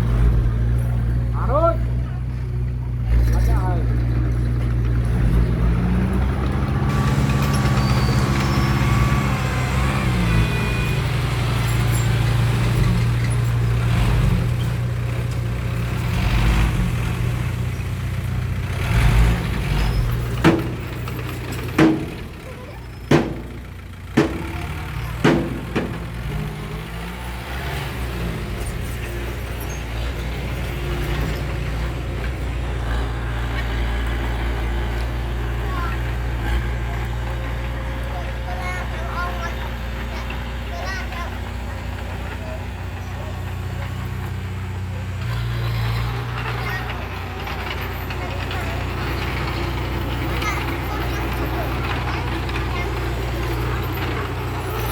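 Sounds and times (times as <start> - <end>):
diesel machinery droning: 0.0 - 54.9
sharp knocks: 20.4 - 26.8.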